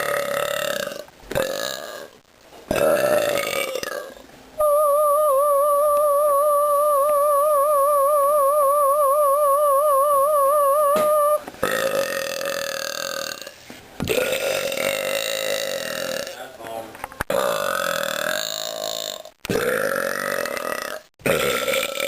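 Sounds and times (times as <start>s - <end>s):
long burps: 0.0s - 4.2s, 11.0s - 16.4s, 17.3s - 22.0s
warbling electronic tone: 4.6s - 11.4s.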